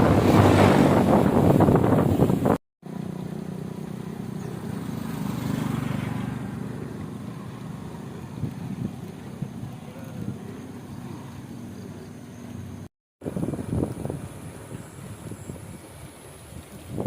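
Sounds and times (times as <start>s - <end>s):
wind buffeting microphone: 0.0s - 2.6s, 6.9s - 17.0s
low road and vehicle drone: 0.0s - 16.6s.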